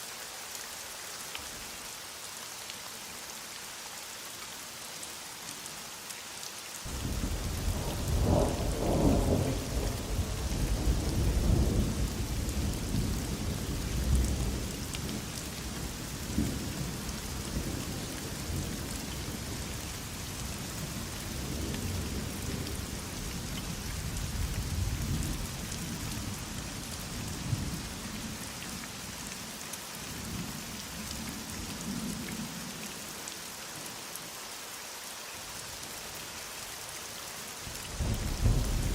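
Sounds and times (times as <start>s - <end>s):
heavy rain falling: 0.0s - 38.9s
thunder rumbling: 6.9s - 14.6s, 38.0s - 38.9s.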